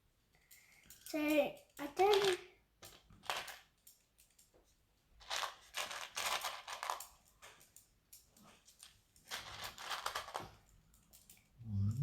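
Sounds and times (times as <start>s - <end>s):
plastic pieces rustling and clicking: 1.8s - 4.4s, 5.2s - 11.4s.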